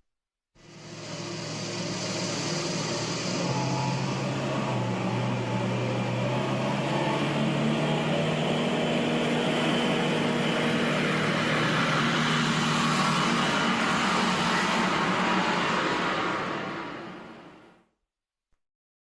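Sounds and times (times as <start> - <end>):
road roller engine running: 0.6 - 17.7.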